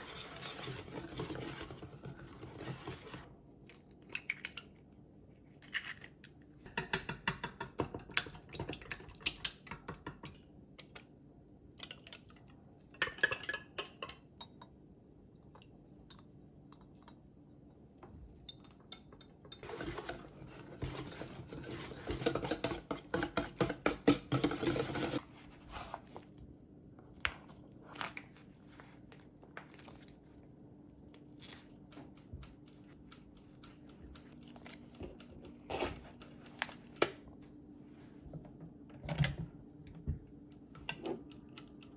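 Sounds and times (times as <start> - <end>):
utensils and dishes clinking: 18.5 - 25.2.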